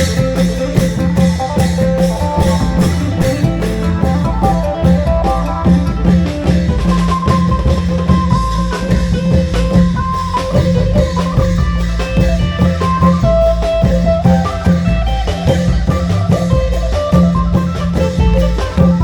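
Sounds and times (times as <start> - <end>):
plucked lute melody: 0.0 - 7.8
steady drone: 0.0 - 9.1
bass: 0.0 - 19.0
long drums beating: 0.0 - 19.0.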